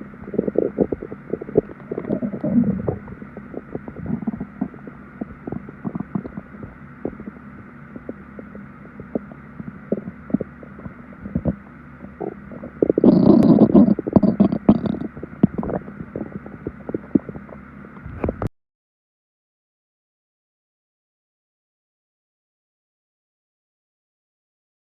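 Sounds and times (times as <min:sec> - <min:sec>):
steady background noise: 0:00.0 - 0:18.5
stomach growling: 0:00.0 - 0:18.5.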